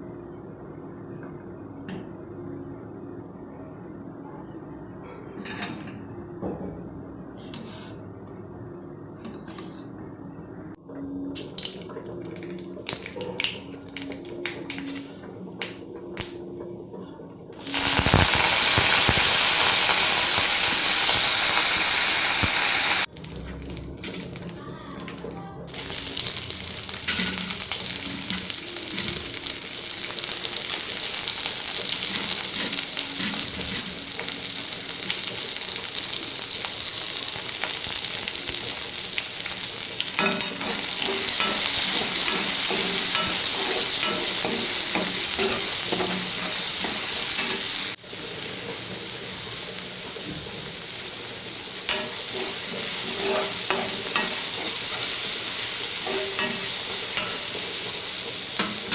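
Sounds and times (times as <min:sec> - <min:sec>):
food frying in hot oil: 0:17.6 - 0:25.0, 0:25.7 - 0:58.9.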